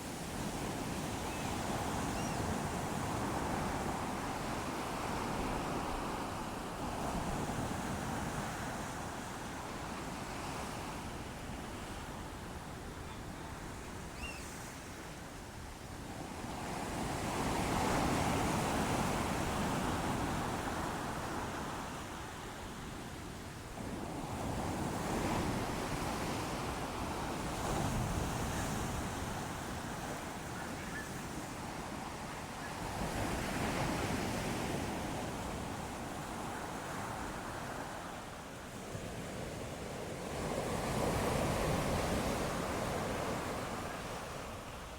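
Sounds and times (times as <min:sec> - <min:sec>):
ocean waves breaking on shore: 0:23.7 - 0:44.9.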